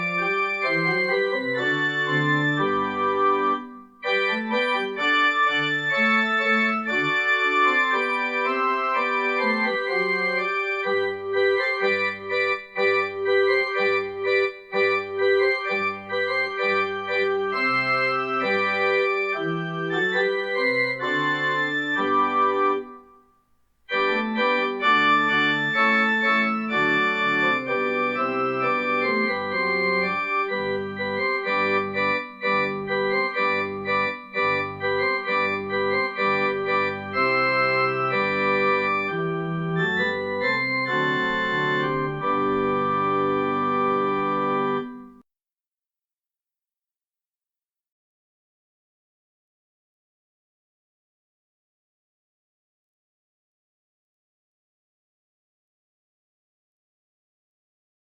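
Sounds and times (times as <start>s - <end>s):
church organ chords: 0.0s - 23.2s, 23.9s - 45.2s.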